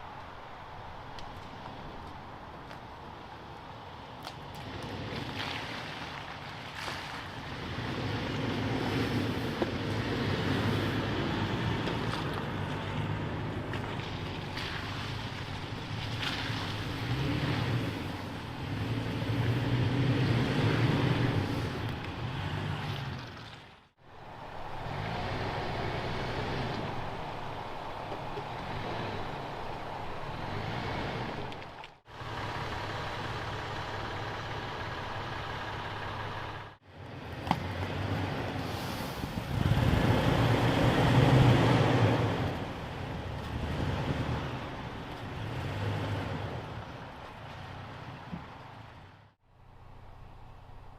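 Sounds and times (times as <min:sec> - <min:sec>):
truck engine running: 0:24.7 - 0:38.6.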